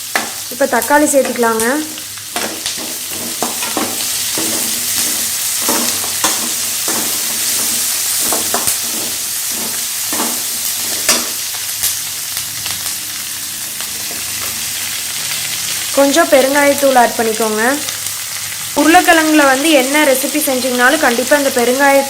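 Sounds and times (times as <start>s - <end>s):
onions frying in hot oil: 0.0s - 22.0s
spatula scraping a pan: 1.2s - 12.0s.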